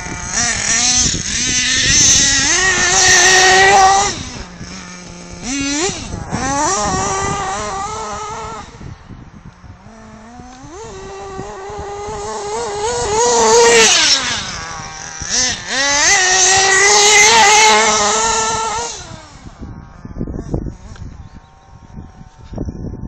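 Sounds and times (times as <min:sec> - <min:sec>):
rc buggy nitro engine revving: 0:00.0 - 0:22.4.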